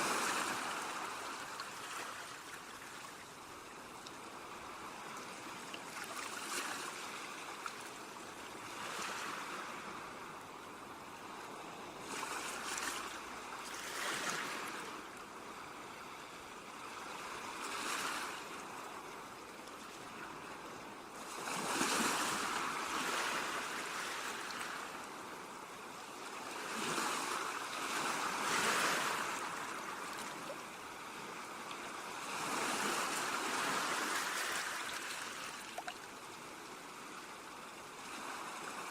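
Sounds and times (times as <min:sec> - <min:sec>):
ocean waves breaking on rocks: 0:26.4 - 0:35.7.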